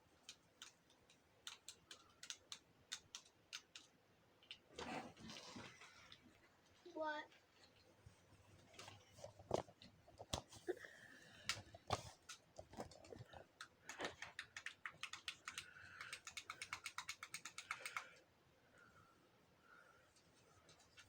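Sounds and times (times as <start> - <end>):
fast even run of clicks: 0.2 - 4.6, 11.5 - 18.2.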